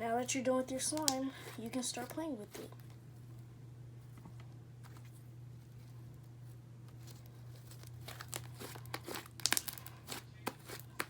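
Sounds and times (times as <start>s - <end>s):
steady low hum: 0.0s - 11.0s
slime squished by hand: 8.0s - 11.0s
slime crackles and pops: 8.1s - 11.0s.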